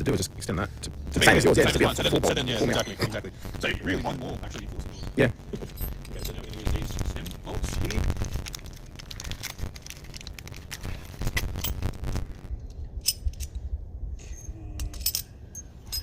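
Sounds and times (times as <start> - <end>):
low rumble: 0.0 - 16.0
small metal parts clinking: 5.6 - 6.6, 8.2 - 11.9, 12.6 - 13.7, 14.4 - 16.0.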